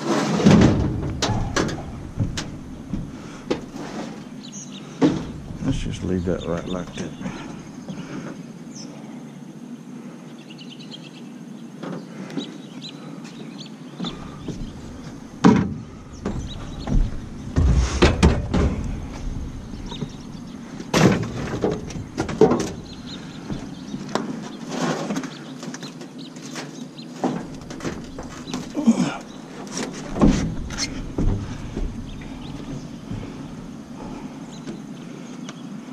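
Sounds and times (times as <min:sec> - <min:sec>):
clunks and knocks of dryer: 0:00.4 - 0:03.8, 0:05.0 - 0:06.2, 0:14.0 - 0:23.8, 0:27.2 - 0:34.2.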